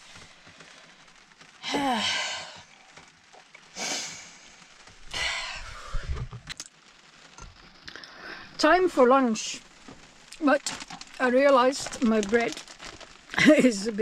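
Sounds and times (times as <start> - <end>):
person sighing and exhaling: 1.6 - 2.7, 3.8 - 4.4, 5.1 - 6.3.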